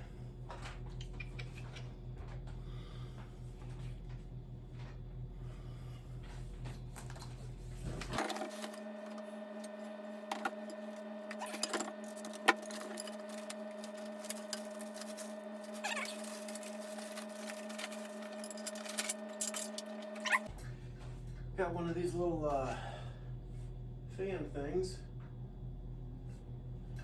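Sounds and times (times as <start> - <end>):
small motor hum: 0.0 - 21.5.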